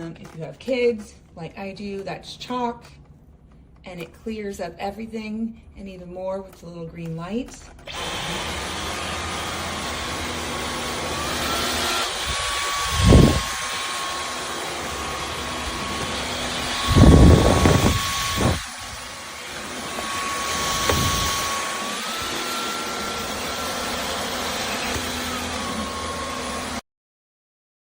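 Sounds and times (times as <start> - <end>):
vacuum cleaner whine: 7.8 - 26.8.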